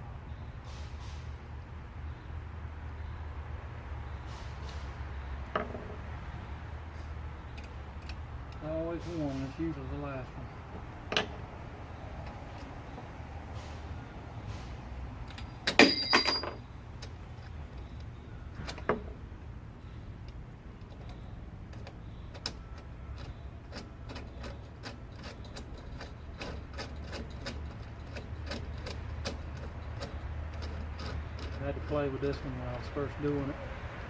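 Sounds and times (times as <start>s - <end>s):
metal tools clattering: 15.3s - 16.6s
metallic ring: 15.3s - 16.7s.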